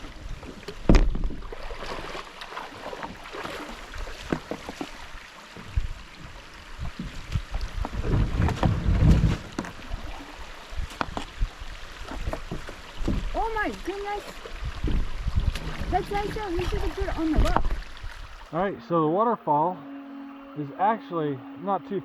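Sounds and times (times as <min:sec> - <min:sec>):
wind rumbling on microphone: 0:00.0 - 0:01.7, 0:05.0 - 0:18.5
paddle splashes: 0:00.0 - 0:18.6
water sloshing around boat: 0:00.0 - 0:18.6.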